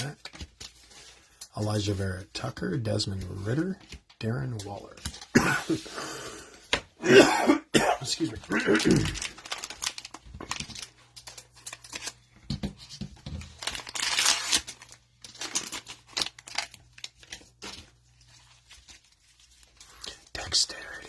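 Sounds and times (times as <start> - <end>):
plastic wrapper crinkling: 8.1 - 12.4, 13.2 - 20.3.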